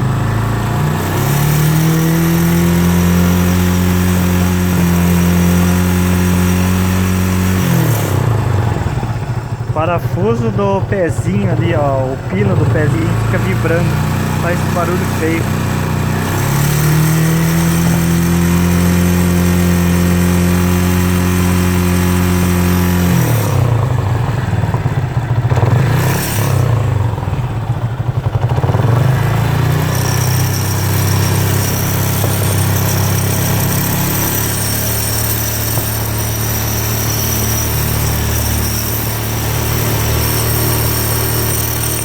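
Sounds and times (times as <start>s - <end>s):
motorcycle engine running: 0.0s - 42.0s.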